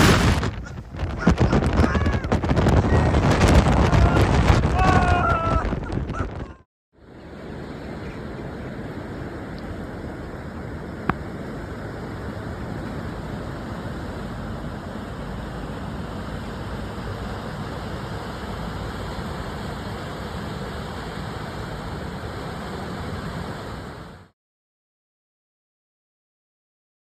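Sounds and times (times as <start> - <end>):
storm wind buffeting microphone: 0.0 - 6.6.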